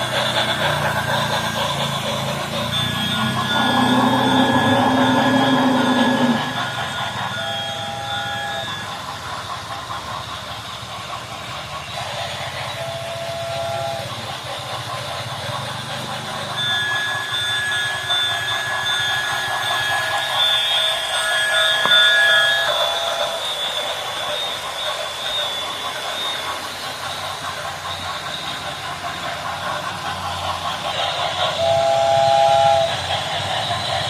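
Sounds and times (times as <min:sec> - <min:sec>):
model train rattle: 0:00.0 - 0:34.0
long whistle tone: 0:01.0 - 0:09.2, 0:12.7 - 0:14.1, 0:16.4 - 0:27.2, 0:31.4 - 0:33.8.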